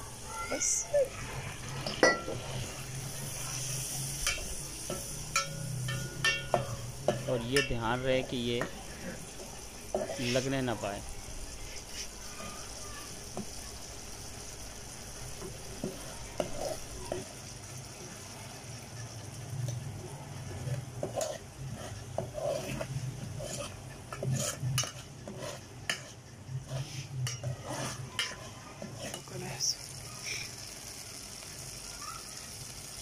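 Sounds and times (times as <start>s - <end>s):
oil sizzling: 0.0s - 33.0s
spoon scraping a pot: 1.3s - 10.7s, 15.8s - 17.0s, 20.6s - 29.3s.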